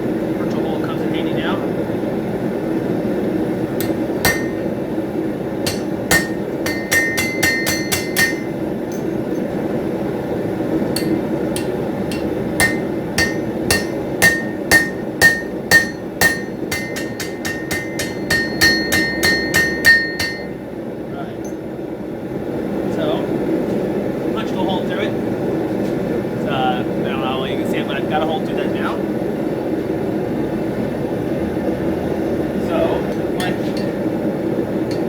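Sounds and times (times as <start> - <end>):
steady hum: 0.0 - 25.7, 32.1 - 35.0
hammer striking steel punch: 3.8 - 4.8, 5.6 - 9.3, 10.9 - 20.6, 33.1 - 34.0.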